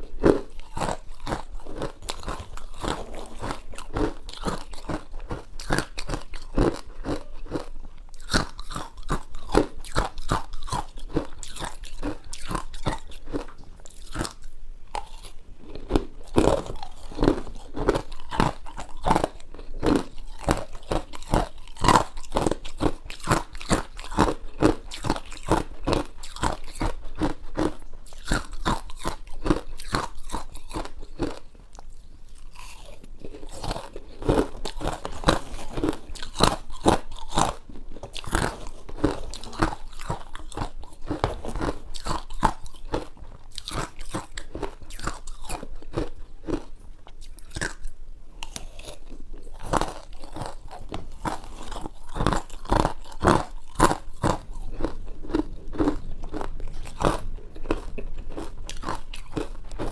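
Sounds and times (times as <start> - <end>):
ice being chewed crunching: 0.0 - 59.9.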